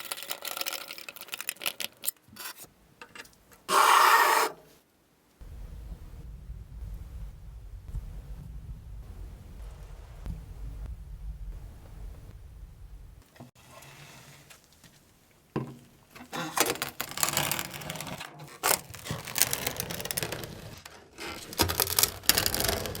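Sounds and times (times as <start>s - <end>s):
metal tool parts clicking and scraping: 0.0s - 4.6s.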